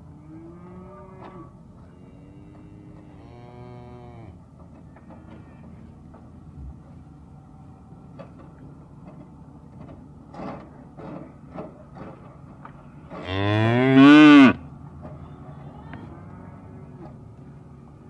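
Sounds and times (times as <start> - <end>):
cow mooing: 2.4 - 4.4, 13.2 - 14.6.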